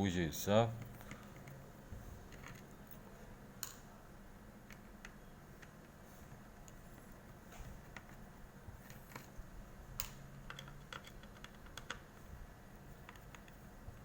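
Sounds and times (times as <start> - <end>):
small clicks and taps of tools: 13.0 - 13.8.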